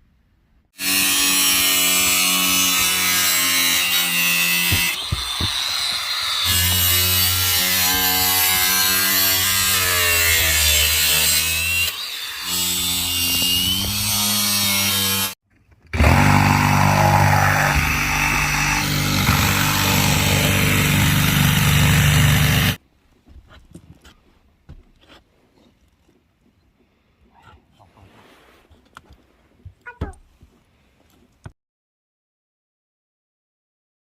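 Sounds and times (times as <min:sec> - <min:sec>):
power saw cutting: 0:00.8 - 0:22.8.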